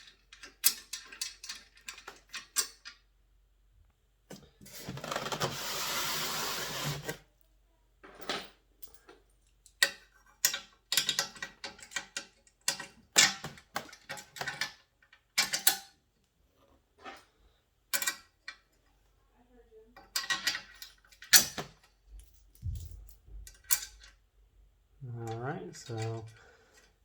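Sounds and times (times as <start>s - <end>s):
metal bolts and nuts clinking: 0.0s - 3.0s, 20.0s - 24.2s, 25.3s - 26.9s.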